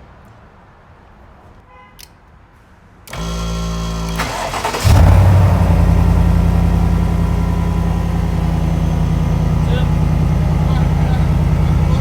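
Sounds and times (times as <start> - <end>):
starter cranking: 3.1 - 12.0
truck engine idling: 3.1 - 12.0.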